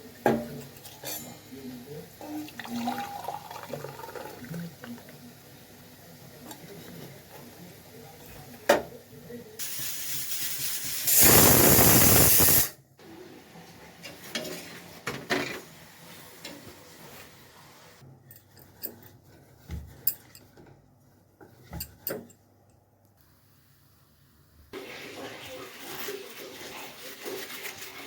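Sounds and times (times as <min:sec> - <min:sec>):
loud even hiss: 0:09.6 - 0:12.8.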